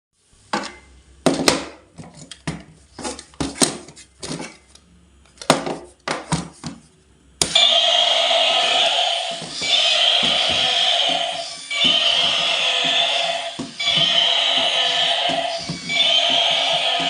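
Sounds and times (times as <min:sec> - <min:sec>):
music: 0:09.3 - 0:17.0.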